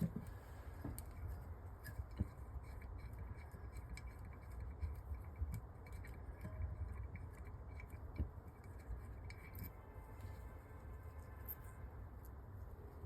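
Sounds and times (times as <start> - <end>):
small parts and tools clicking: 0.8 - 10.4.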